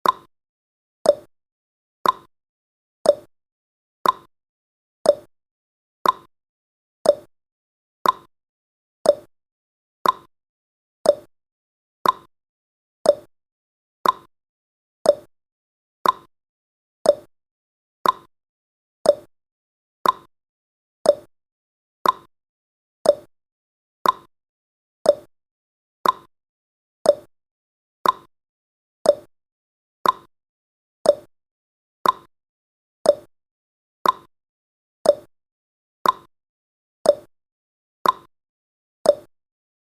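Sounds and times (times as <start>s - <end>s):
timer ticking clicks: 0.0s - 0.3s, 1.0s - 1.3s, 2.0s - 2.3s, 3.0s - 3.3s, 4.0s - 4.3s, 5.0s - 5.3s, 6.0s - 6.3s, 7.0s - 7.3s, 8.0s - 8.3s, 9.0s - 9.3s, 10.0s - 10.3s, 11.0s - 11.3s, 12.0s - 12.3s, 13.0s - 13.3s, 14.0s - 14.3s, 15.0s - 15.3s, 16.0s - 16.3s, 17.0s - 17.3s, 18.0s - 18.3s, 19.0s - 19.3s, 20.0s - 20.3s, 21.0s - 21.3s, 22.0s - 22.3s, 23.0s - 23.3s, 24.0s - 24.3s, 25.0s - 25.3s, 26.0s - 26.3s, 27.0s - 27.3s, 28.0s - 28.3s, 29.0s - 29.3s, 30.0s - 30.3s, 31.0s - 31.3s, 32.0s - 32.3s, 33.0s - 33.3s, 34.0s - 34.3s, 35.0s - 35.3s, 36.0s - 36.3s, 37.0s - 37.3s, 38.0s - 38.3s, 39.0s - 39.3s.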